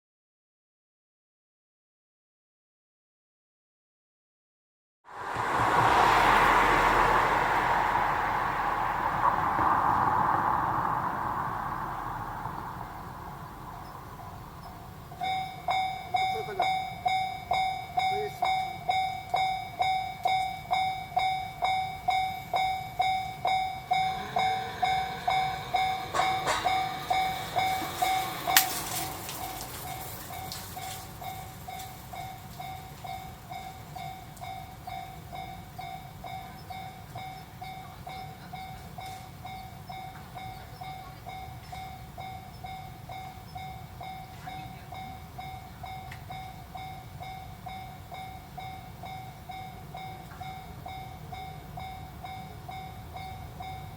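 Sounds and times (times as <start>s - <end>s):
train passing: 5.1s - 53.9s
rail clicks: 5.2s - 48.9s
level-crossing warning bell ringing: 12.0s - 53.9s
sharp clack: 26.0s - 29.9s.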